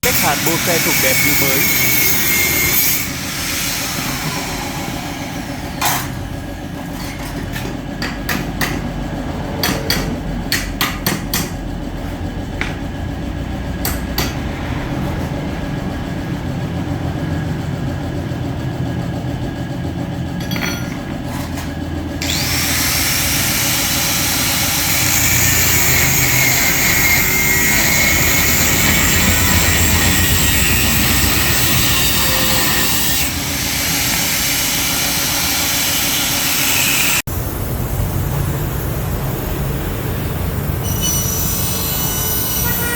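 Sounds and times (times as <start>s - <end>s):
low steady rumble: 4.7s - 23.5s
metal knocking and tapping: 6.9s - 9.0s, 9.6s - 13.0s, 13.8s - 14.5s, 20.4s - 21.8s.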